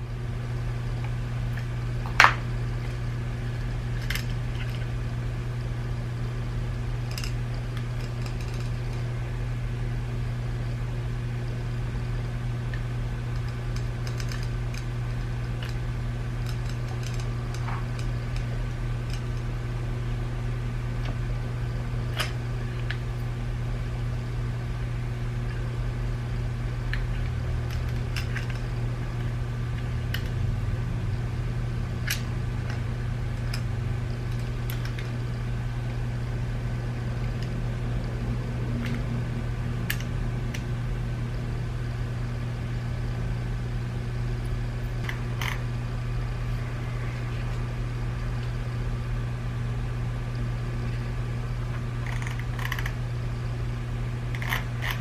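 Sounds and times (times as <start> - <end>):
steady low hum: 0.0 - 55.0
plastic parts clicking: 4.0 - 4.8, 13.4 - 14.9.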